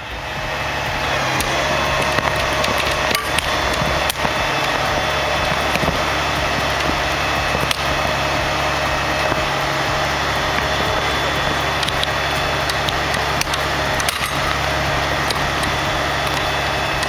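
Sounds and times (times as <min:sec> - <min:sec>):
stump grinder grinding wood: 0:00.0 - 0:17.0
wood chips ticking: 0:00.0 - 0:17.0.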